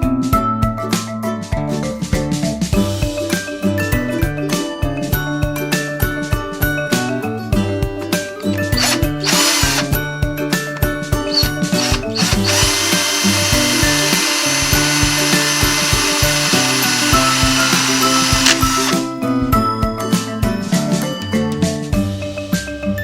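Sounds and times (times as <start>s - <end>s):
music with a steady beat: 0.0s - 23.0s
small drill-like power tool: 8.6s - 10.0s, 11.3s - 19.1s.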